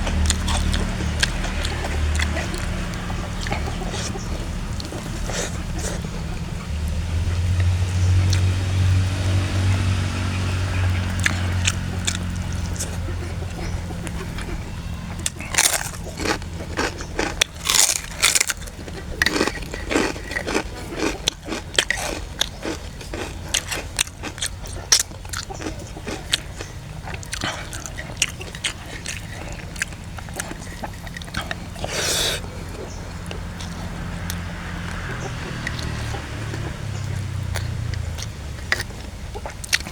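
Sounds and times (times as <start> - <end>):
low hum: 0.0 - 19.2
person crunching crackers: 11.1 - 39.9.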